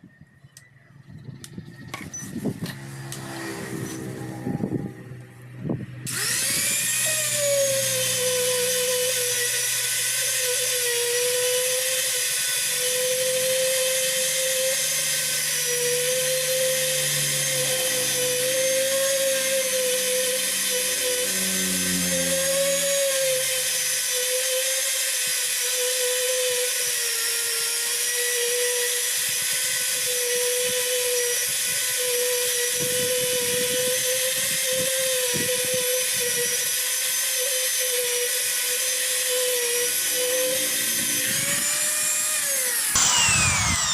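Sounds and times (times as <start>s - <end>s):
low wavering hum: 0.0s - 9.4s, 15.5s - 23.6s, 39.4s - 43.9s
rotary power tool whining: 1.3s - 43.9s.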